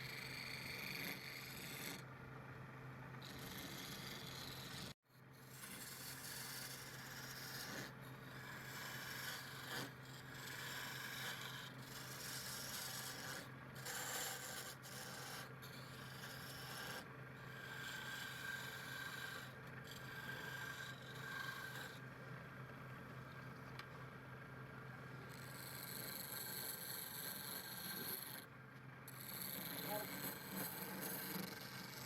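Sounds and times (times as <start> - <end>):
steady motor hum: 0.0 - 32.0
lathe tool scraping wood: 17.6 - 22.0, 29.1 - 32.0.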